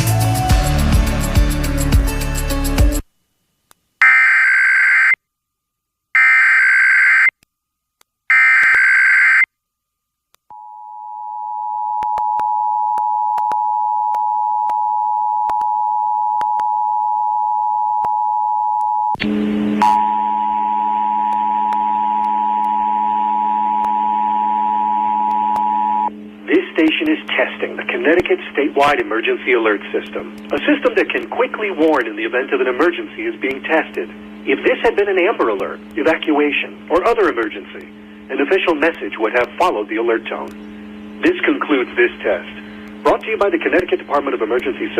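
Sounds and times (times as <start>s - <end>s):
screeching data bursts: 4.0s - 5.2s, 6.2s - 7.3s, 8.3s - 9.5s
low hum and hiss: 10.0s - 44.9s.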